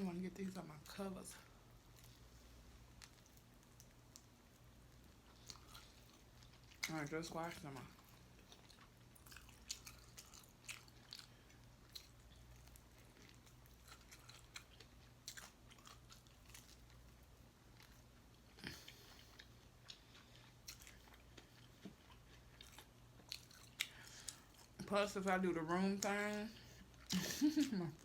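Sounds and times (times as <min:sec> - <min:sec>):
person chewing and biting food: 0:01.8 - 0:06.9, 0:08.0 - 0:24.8.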